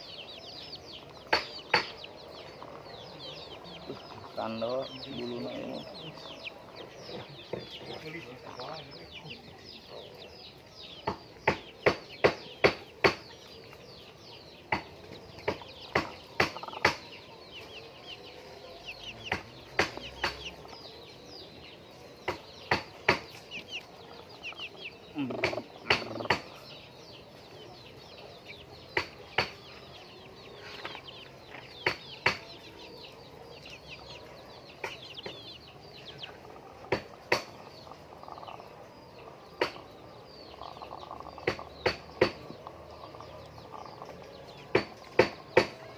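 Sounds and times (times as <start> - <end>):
hens clucking and calling: 0.0 - 45.9.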